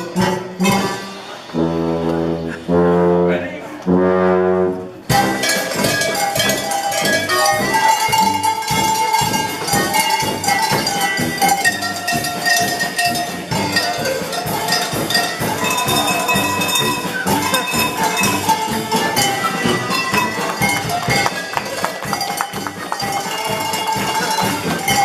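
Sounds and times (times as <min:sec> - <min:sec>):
tuned cowbells playing a tune: 0:05.1 - 0:25.0.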